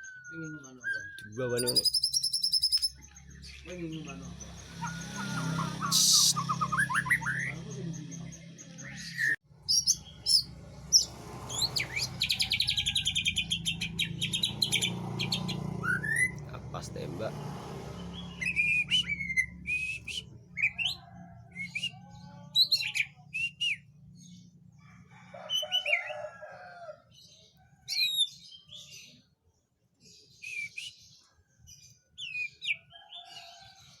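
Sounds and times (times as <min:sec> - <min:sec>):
songbird chirping and whistling: 0:00.0 - 0:16.5, 0:18.2 - 0:22.0, 0:22.6 - 0:24.0, 0:30.3 - 0:31.2, 0:32.2 - 0:33.0
lower bird calls: 0:04.5 - 0:07.6, 0:08.9 - 0:17.3.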